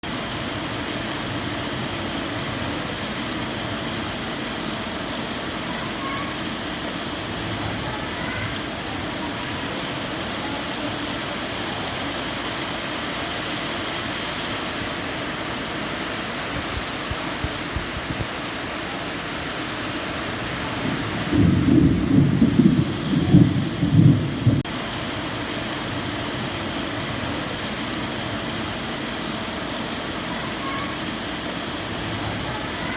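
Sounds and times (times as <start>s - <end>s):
rain falling on leaves: 0.0s - 32.9s.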